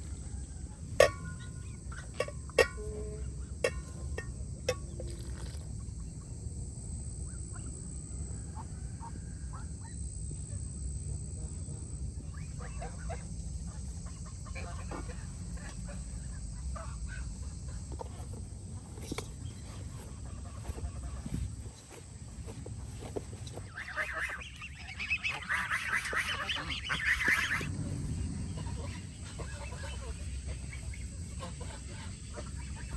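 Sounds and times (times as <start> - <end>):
birds calling: 12.2 - 32.9
steady low rumble: 26.3 - 32.9.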